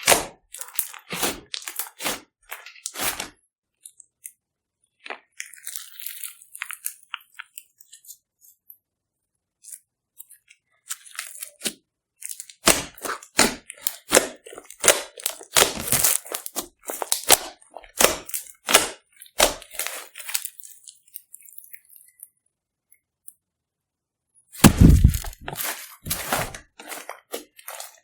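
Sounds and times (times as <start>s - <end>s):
slime squelching and crackling: 0.0s - 3.4s, 5.0s - 8.2s, 10.9s - 22.2s, 24.6s - 28.0s.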